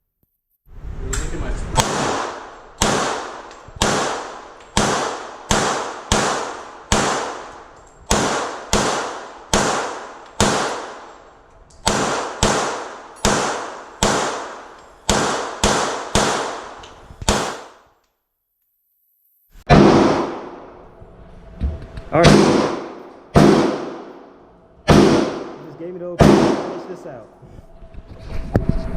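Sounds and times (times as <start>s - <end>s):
gunshots: 1.7s - 17.9s, 19.7s - 21.0s, 22.0s - 27.3s.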